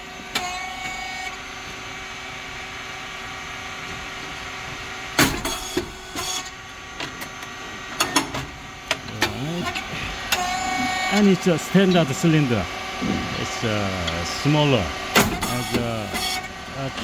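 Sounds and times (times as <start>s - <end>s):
machine motor humming: 0.3s - 17.0s
loud sudden bursts: 10.4s - 16.6s.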